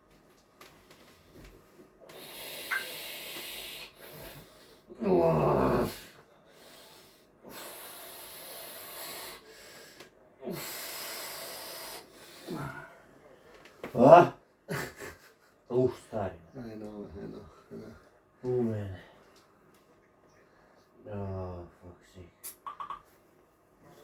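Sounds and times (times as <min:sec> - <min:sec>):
person groaning in pain: 0:05.0 - 0:06.0.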